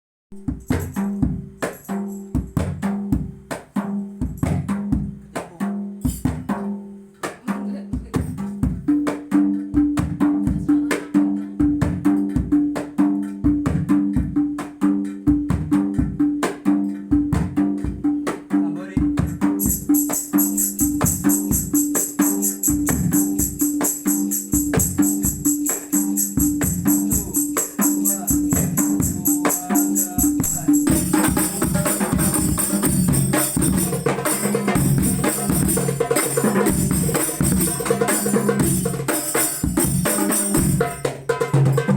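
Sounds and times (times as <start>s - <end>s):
frame drums playing fast rhythm: 0.3s - 41.9s
jingle tambourine rattle: 0.4s - 2.6s, 6.0s - 6.3s, 19.6s - 41.9s
deep bass drum: 30.2s - 34.1s.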